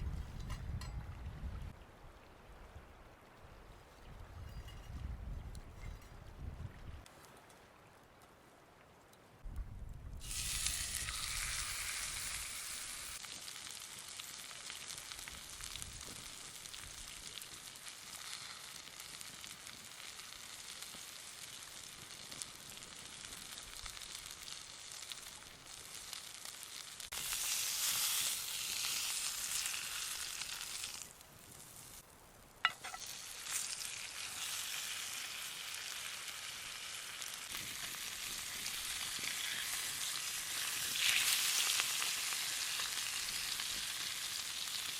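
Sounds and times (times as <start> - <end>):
steak sizzling in butter: 10.2 - 32.0, 32.6 - 44.9.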